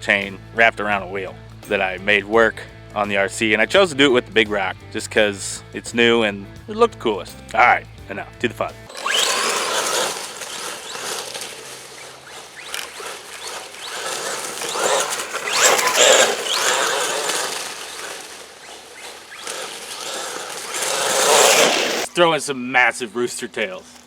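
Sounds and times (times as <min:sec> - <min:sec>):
electric motor whining: 0:08.9 - 0:22.1
chain tyres churning dirt: 0:08.9 - 0:22.3.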